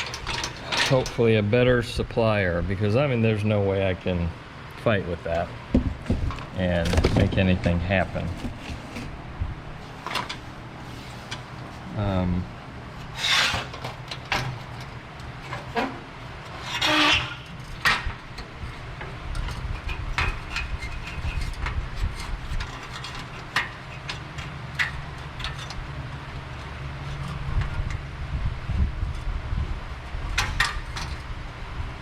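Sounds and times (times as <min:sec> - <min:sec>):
steady low hum: 0:00.0 - 0:32.0
plastic panel scraping: 0:05.7 - 0:09.2.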